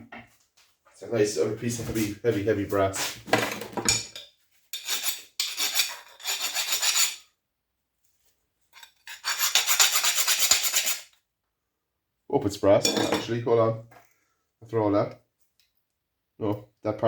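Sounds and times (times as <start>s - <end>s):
metal scraping on metal: 4.0s - 7.2s, 8.7s - 11.1s.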